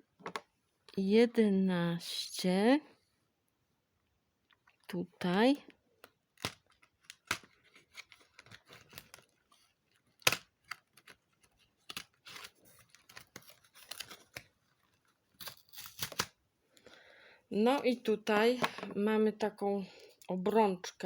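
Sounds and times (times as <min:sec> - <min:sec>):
cardboard tearing: 0:10.6 - 0:14.5, 0:15.4 - 0:16.3.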